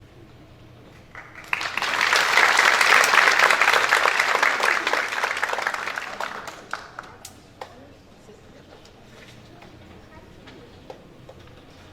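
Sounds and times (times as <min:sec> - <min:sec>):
audience applauding: 0:01.0 - 0:07.3.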